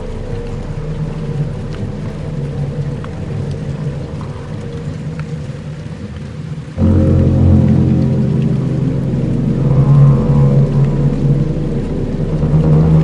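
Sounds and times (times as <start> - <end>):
dark ambient music drone: 0.0 - 6.0, 6.8 - 13.0
deep chord: 6.8 - 13.0.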